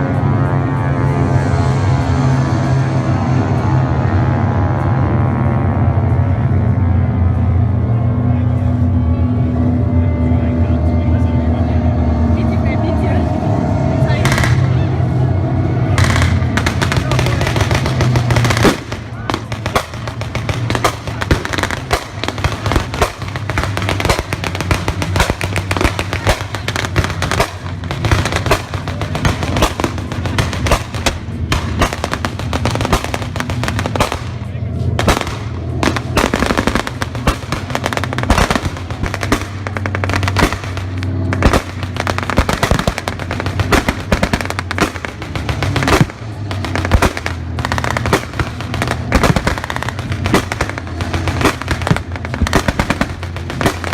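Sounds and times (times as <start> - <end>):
steady low hum: 0.0 - 53.9
simulated gunfire barrage: 15.8 - 53.9.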